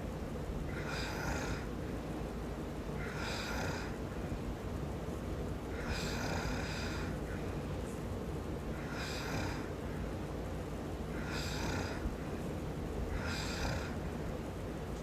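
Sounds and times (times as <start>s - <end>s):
steady low hum: 0.0s - 15.0s
man snoring: 0.7s - 1.7s, 3.0s - 4.0s, 5.8s - 7.1s, 8.8s - 9.7s, 11.1s - 12.0s, 13.1s - 14.0s.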